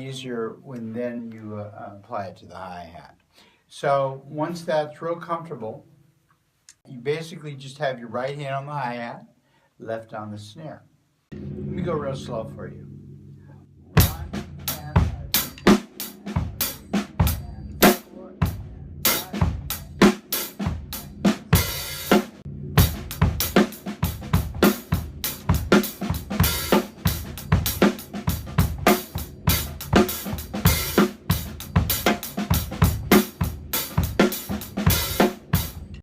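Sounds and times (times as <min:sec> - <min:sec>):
bass drum: 0:11.3 - 0:36.0
cymbal wash: 0:11.3 - 0:36.0.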